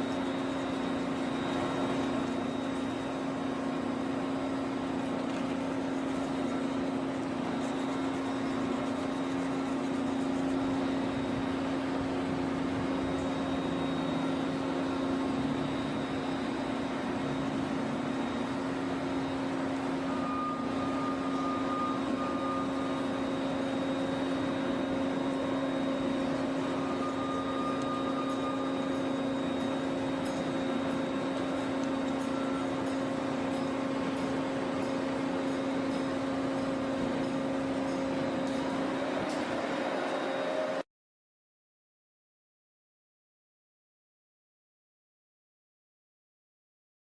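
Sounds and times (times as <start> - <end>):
steady machine hum: 0.0 - 40.9
short high whine: 10.5 - 33.9.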